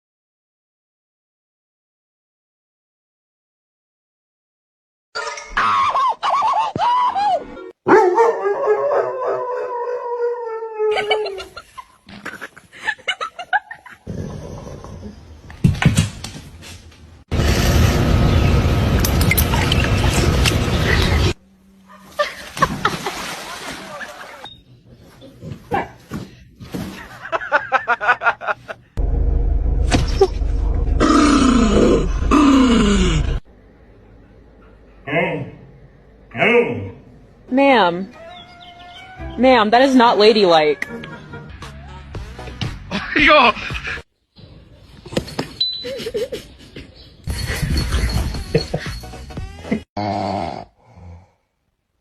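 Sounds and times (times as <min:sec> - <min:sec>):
dog yipping: 0:06.4 - 0:09.4
dog howling: 0:08.0 - 0:11.2, 0:38.1 - 0:39.3
loud low rumble: 0:29.0 - 0:34.4.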